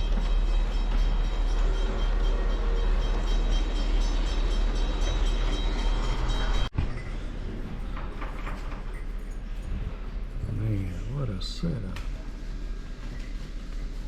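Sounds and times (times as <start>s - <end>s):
diesel locomotive idling: 0.0s - 6.7s.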